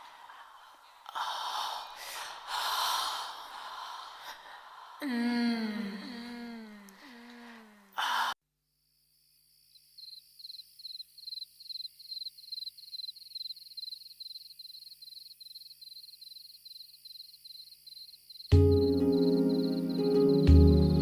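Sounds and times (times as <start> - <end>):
cricket chirping: 8.8 - 20.2.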